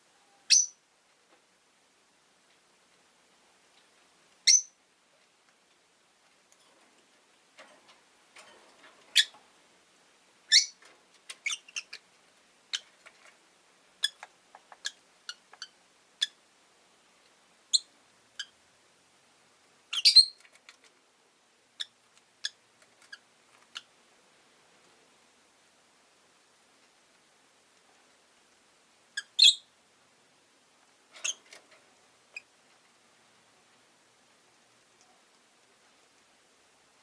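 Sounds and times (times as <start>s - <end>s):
lovebirds chirping: 0.1s - 0.8s, 4.4s - 4.8s, 9.1s - 9.4s, 10.5s - 10.8s, 11.4s - 12.1s, 14.0s - 16.4s, 17.7s - 18.6s, 19.9s - 20.5s, 21.8s - 23.9s, 29.1s - 29.7s.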